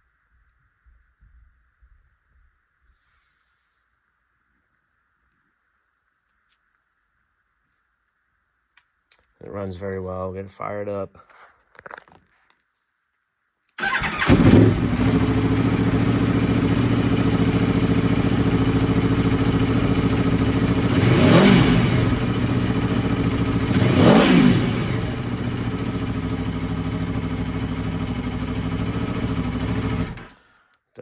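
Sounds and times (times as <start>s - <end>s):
motorcycle engine starting and idling: 13.8s - 30.5s
engine revving blips: 20.6s - 25.8s.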